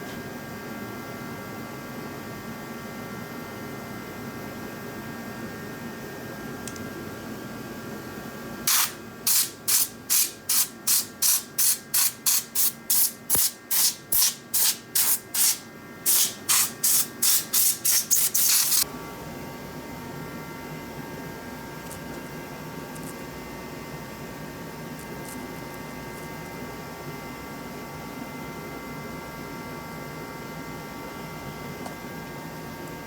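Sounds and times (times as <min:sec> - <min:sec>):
hissing spray bursts: 0:08.7 - 0:18.8.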